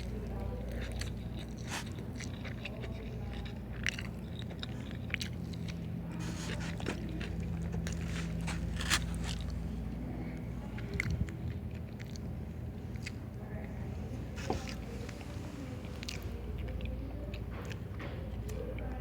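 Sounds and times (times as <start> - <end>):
low steady hum: 0.0 - 19.0
person chewing food: 0.6 - 10.0, 10.7 - 13.4, 14.4 - 18.0.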